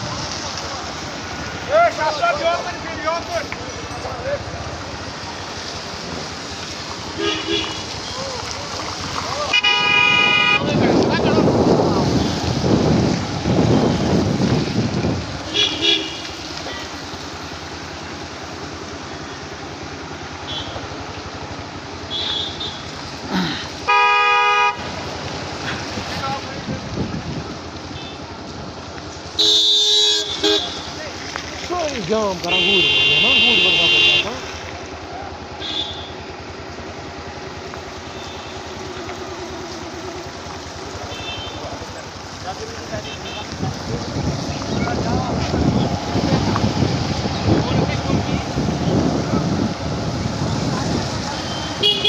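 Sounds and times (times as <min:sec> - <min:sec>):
vehicle horn blare: 0:07.1 - 0:08.1, 0:09.5 - 0:11.0, 0:15.5 - 0:16.4, 0:20.4 - 0:20.9, 0:22.0 - 0:22.9, 0:23.8 - 0:24.9, 0:27.9 - 0:28.2, 0:29.4 - 0:31.0, 0:32.5 - 0:34.5, 0:35.6 - 0:36.3, 0:38.0 - 0:38.8, 0:41.1 - 0:41.7, 0:43.0 - 0:43.6, 0:51.3 - 0:52.0
vehicle engine idling: 0:30.0 - 0:52.0.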